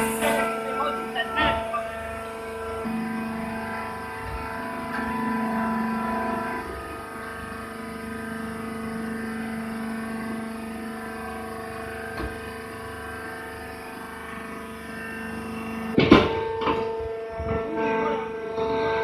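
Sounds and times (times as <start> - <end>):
motor and pump humming: 0.0 - 19.0
loud clunks: 16.0 - 17.6.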